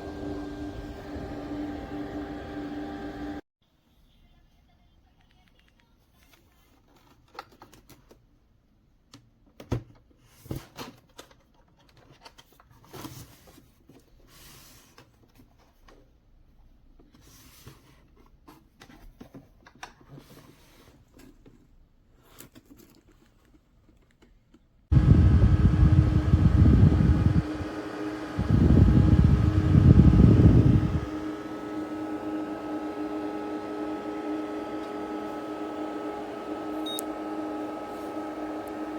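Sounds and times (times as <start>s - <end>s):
air cooler fan humming: 0.0s - 3.4s, 24.9s - 38.9s.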